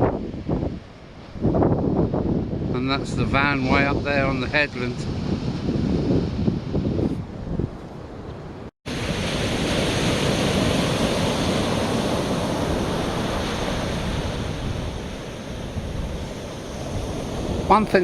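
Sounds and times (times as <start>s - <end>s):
wind buffeting microphone: 0.0s - 18.0s
surf breaking on beach: 8.9s - 18.0s.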